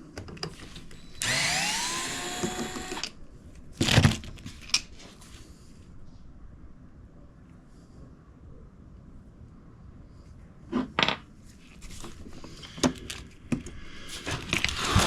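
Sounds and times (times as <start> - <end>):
power tool motor whirring: 0.9 - 3.1.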